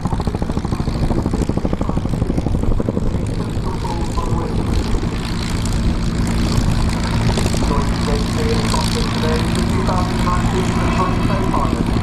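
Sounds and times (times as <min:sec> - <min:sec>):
helicopter rotors beating: 0:00.0 - 0:12.0
turbine hum: 0:00.0 - 0:12.0.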